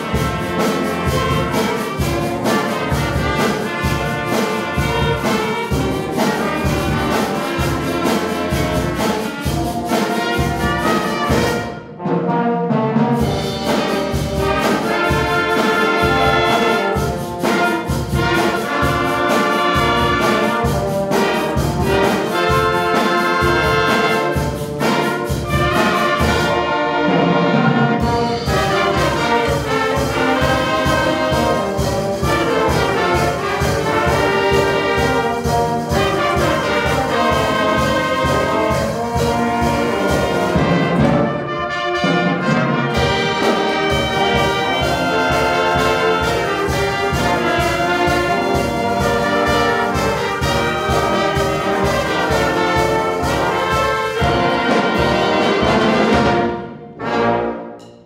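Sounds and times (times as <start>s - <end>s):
school band playing: 0.0s - 58.0s.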